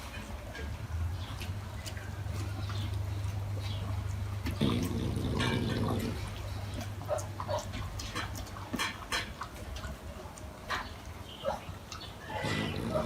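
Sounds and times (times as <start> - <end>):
dog snoring: 4.5 - 6.3, 12.4 - 13.0.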